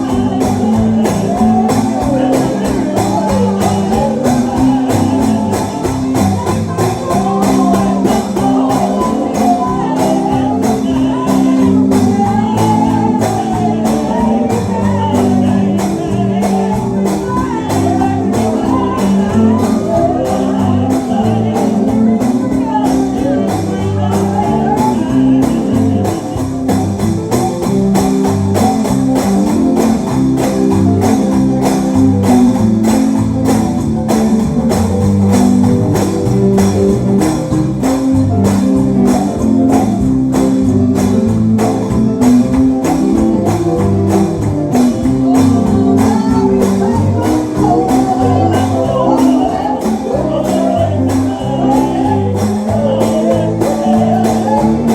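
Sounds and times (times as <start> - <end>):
gospel band playing: 0.0 - 54.9.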